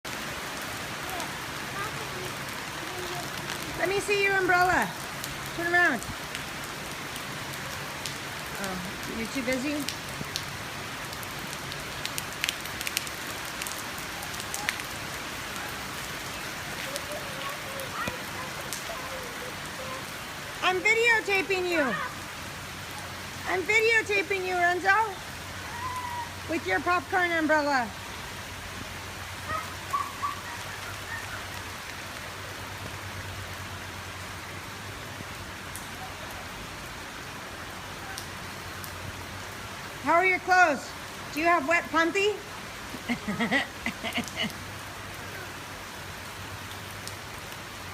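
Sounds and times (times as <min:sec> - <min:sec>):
raindrops tapping: 0:00.0 - 0:27.8, 0:40.4 - 0:45.2
heavy rain falling: 0:00.0 - 0:47.9.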